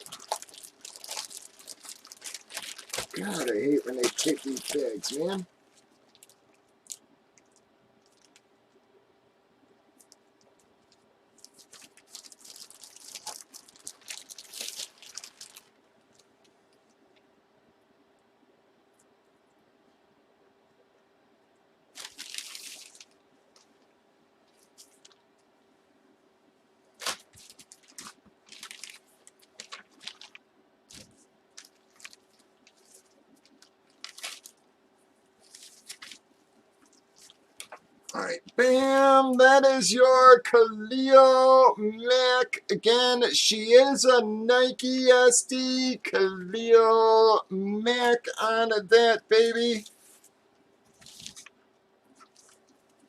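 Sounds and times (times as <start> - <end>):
plastic bag crinkling: 0.0 - 8.4, 10.0 - 16.9, 21.9 - 23.9, 24.5 - 25.2, 27.0 - 34.7, 35.3 - 38.2, 50.9 - 53.0.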